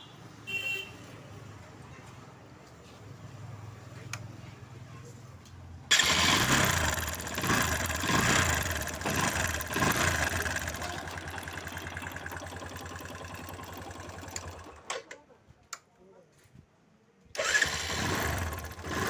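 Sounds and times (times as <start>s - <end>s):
motorcycle engine revving and idling: 5.9s - 14.9s, 17.4s - 19.0s.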